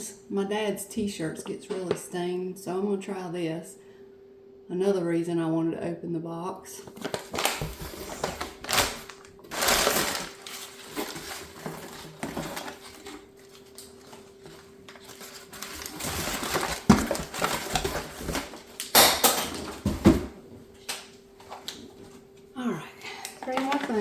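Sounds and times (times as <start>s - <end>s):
packaging crinkling and rustling: 6.8s - 20.2s, 23.4s - 24.0s.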